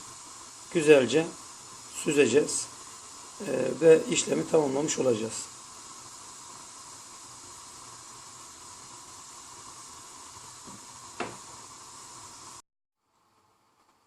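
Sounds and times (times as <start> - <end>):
water boiling in a pot: 0.0 - 14.0
light knock: 10.7 - 11.4.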